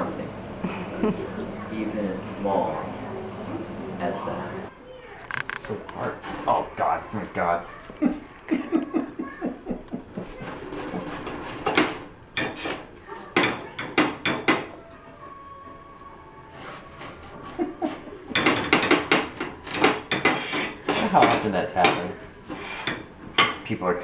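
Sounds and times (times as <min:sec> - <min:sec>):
knife cutting on a cutting board: 0:10.2 - 0:12.9, 0:16.5 - 0:21.4.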